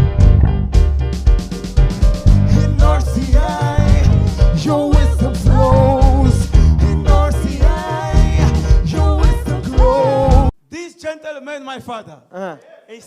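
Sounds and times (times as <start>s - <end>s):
bass guitar and drums: 0.0s - 10.5s
person singing: 2.2s - 10.5s.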